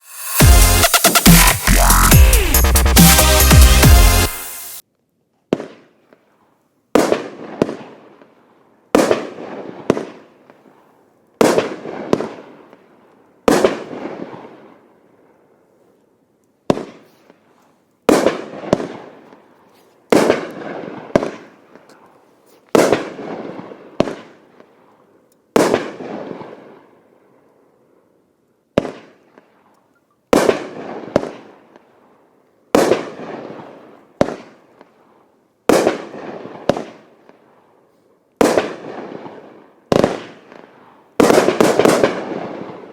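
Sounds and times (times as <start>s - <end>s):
firework bangs: 0.0s - 1.5s, 7.0s - 8.0s, 9.0s - 10.3s, 11.4s - 12.6s, 13.5s - 14.6s, 18.1s - 19.3s, 20.1s - 21.6s, 22.7s - 24.4s, 30.3s - 31.5s, 32.8s - 34.6s, 35.7s - 37.0s, 38.4s - 42.9s.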